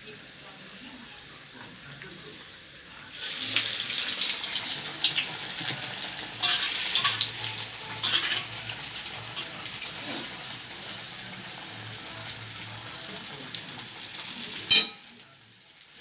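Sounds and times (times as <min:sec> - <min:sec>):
fritters sizzling in hot oil: 0:00.0 - 0:16.0.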